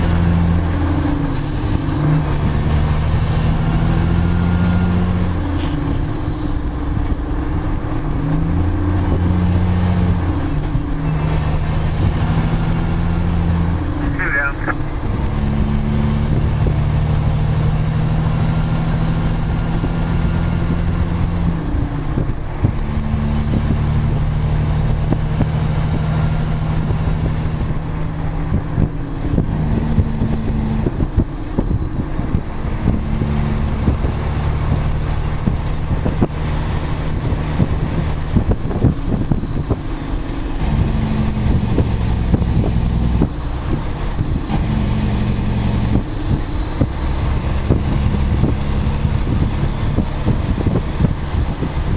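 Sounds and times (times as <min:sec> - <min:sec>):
truck diesel engine under load: 0:00.0 - 0:51.9
high whine: 0:13.8 - 0:15.4.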